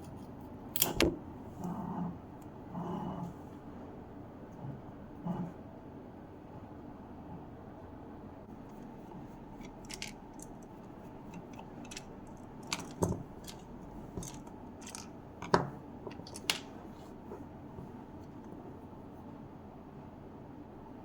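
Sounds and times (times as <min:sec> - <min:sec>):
plastic parts clicking and knocking: 0:09.6 - 0:16.8.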